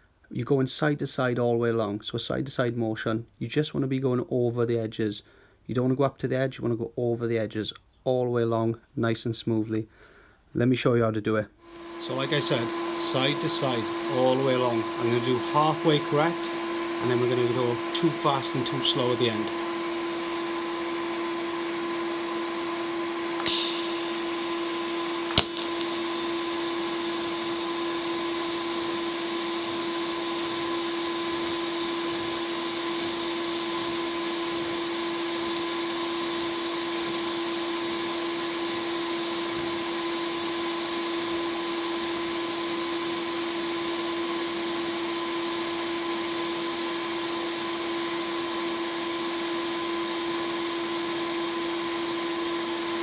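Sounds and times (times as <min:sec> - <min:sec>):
welder humming and hissing: 0:11.6 - 0:53.0.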